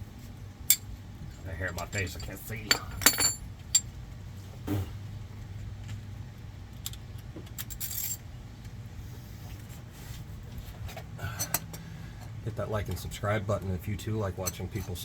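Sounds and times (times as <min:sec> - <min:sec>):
steady low hum: 0:00.0 - 0:14.6
metal tools clinking and scraping: 0:00.7 - 0:03.9.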